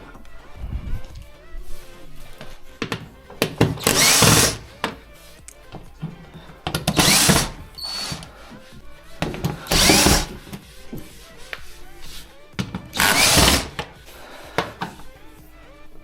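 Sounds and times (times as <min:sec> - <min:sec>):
cordless drill bursts: 0:03.4 - 0:05.0, 0:06.7 - 0:08.5, 0:09.2 - 0:10.6, 0:12.9 - 0:13.9.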